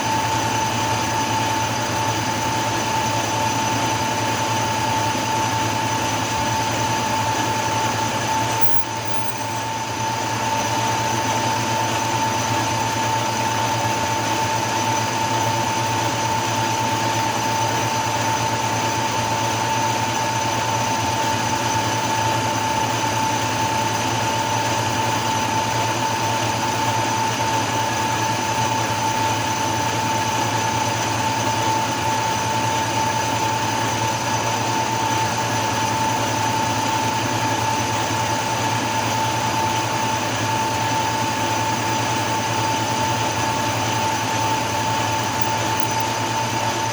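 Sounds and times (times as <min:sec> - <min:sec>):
lathe running with high whine: 0:01.2 - 0:10.0, 0:38.0 - 0:46.8
drill boring metal: 0:08.5 - 0:09.9, 0:42.1 - 0:46.4.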